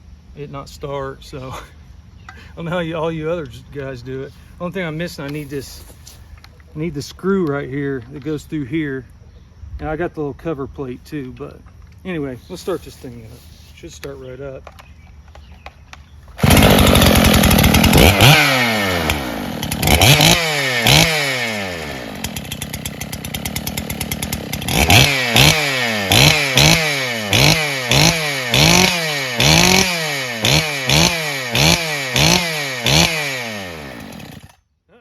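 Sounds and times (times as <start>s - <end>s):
chainsaw engine revving: 16.4s - 34.6s.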